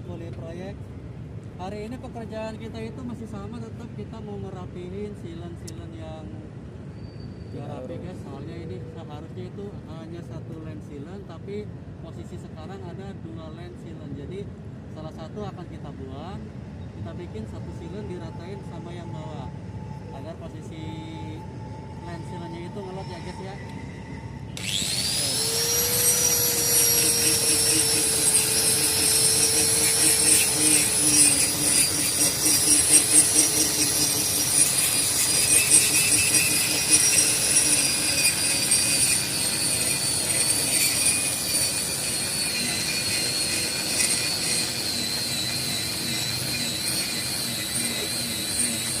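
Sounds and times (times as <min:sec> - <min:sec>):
power tool high whine: 0:17.5 - 0:49.0
rasping cutting noise: 0:22.2 - 0:49.0.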